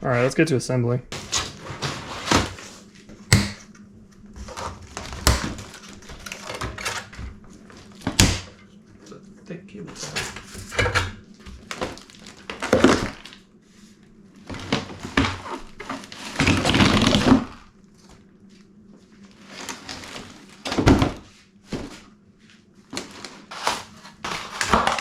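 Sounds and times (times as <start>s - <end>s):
packaging rustling and crinkling: 1.1s - 3.2s, 4.2s - 8.6s, 9.9s - 13.5s, 14.4s - 22.0s, 22.9s - 25.0s.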